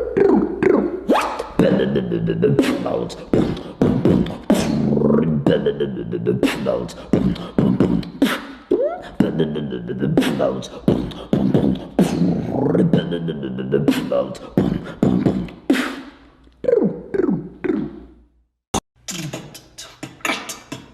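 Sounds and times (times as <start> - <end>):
beatboxing: 0.0 - 18.2, 19.0 - 20.9.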